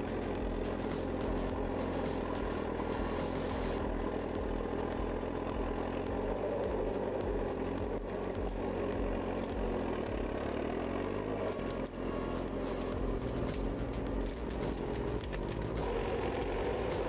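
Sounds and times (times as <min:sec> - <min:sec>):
heavy machine engine running: 0:00.0 - 0:17.0.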